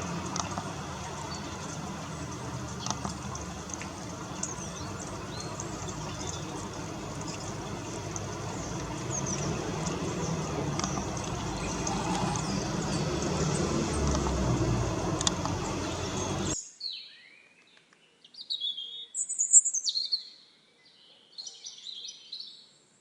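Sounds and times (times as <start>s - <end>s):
low rumble: 0.0s - 16.6s
rain: 0.0s - 16.6s
small birds chirping: 0.0s - 17.8s.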